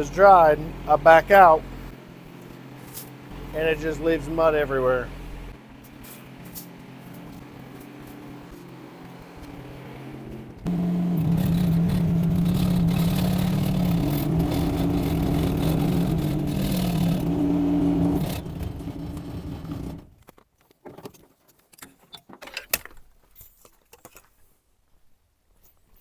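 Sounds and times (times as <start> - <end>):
diesel engine running: 0.0 - 20.2.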